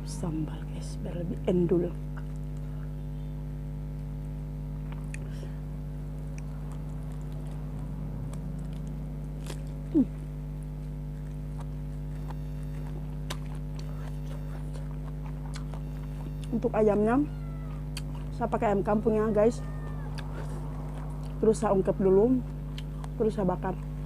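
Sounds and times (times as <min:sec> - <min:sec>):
low electrical hum: 0:00.0 - 0:24.0
chewing and mouth clicks: 0:04.0 - 0:05.3, 0:06.0 - 0:17.0, 0:17.6 - 0:18.4, 0:19.7 - 0:21.6, 0:22.4 - 0:24.0.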